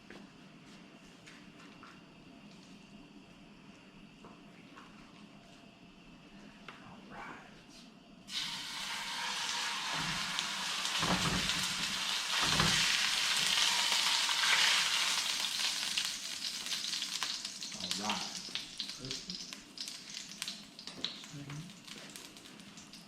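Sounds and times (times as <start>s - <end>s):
food frying sizzle: 8.3s - 23.0s.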